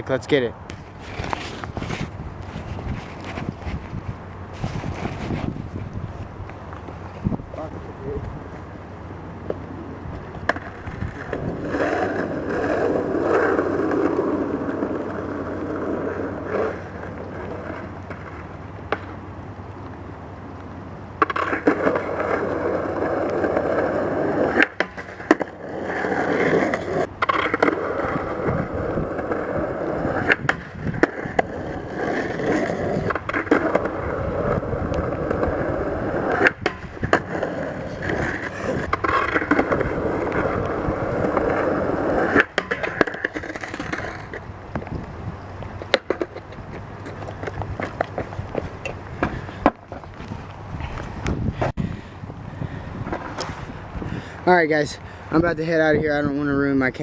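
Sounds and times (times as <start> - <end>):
skateboard wheels rolling: 0.0 - 57.0
skateboard clacking on landing: 9.4 - 19.2, 21.2 - 29.5, 30.1 - 50.4.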